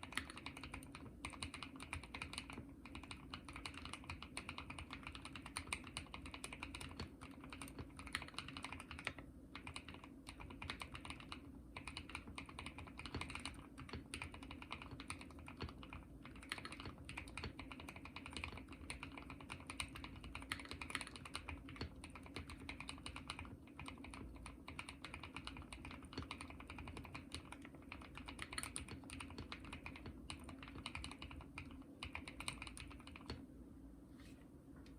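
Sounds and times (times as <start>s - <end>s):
mechanical keyboard typing: 0.0s - 33.4s.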